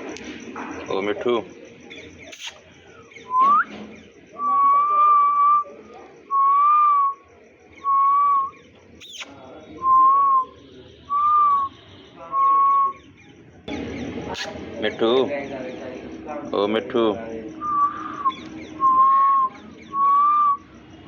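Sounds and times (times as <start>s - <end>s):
sharp falling chirp: 2.0s - 5.0s, 7.8s - 11.8s
whistled notes: 2.4s - 3.8s, 4.4s - 13.0s, 17.5s - 20.7s
rising whistle: 17.6s - 20.7s.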